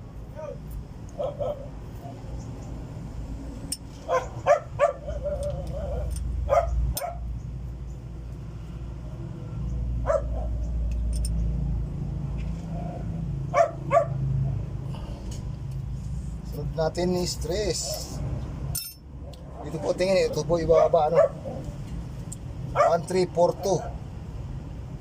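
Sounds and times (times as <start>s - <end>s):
dog barking: 1.2s - 1.7s, 4.0s - 7.2s, 10.0s - 10.6s, 13.5s - 14.2s, 20.7s - 21.6s, 22.7s - 24.0s.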